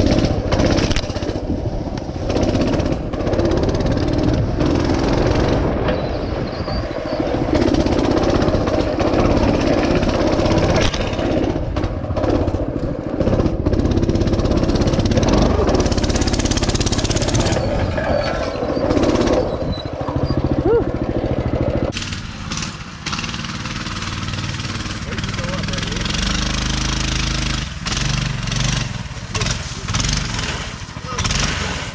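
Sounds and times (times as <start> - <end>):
mini bike engine running: 0.0 - 31.9.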